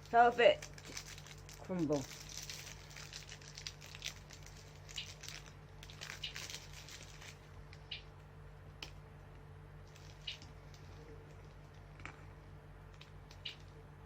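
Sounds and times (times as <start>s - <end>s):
wrapper crinkling: 0.0s - 7.8s, 9.8s - 11.9s.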